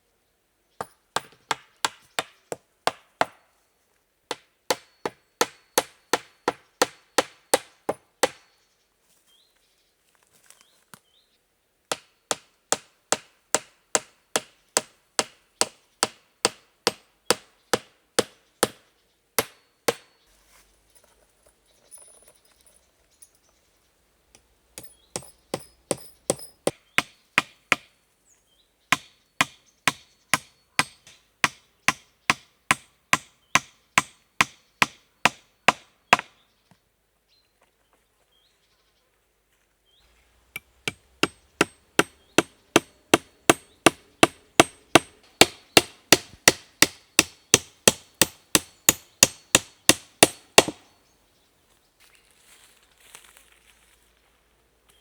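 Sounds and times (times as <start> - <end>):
hand tool striking wood: 0.8 - 3.4, 4.3 - 8.6, 11.9 - 18.8, 19.4 - 20.2, 24.8 - 27.9, 28.9 - 36.4, 40.5 - 50.9.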